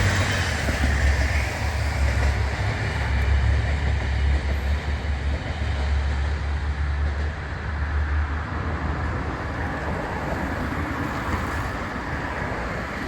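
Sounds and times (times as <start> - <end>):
passing train rumble: 0.0 - 13.0
street traffic noise: 0.0 - 13.0.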